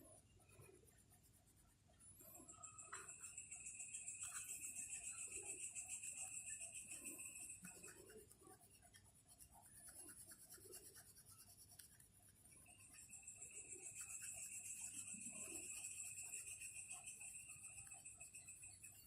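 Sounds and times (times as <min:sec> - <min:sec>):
marker scratching on paper: 0:07.6 - 0:12.9.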